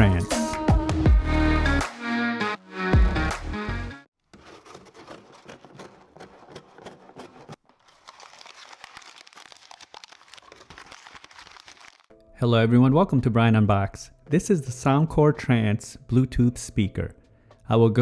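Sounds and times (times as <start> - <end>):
packaging crinkling and rustling: 4.3 - 12.1.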